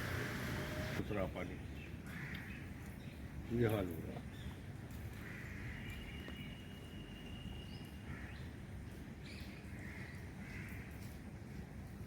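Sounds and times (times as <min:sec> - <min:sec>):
birds calling: 0:00.0 - 0:01.3.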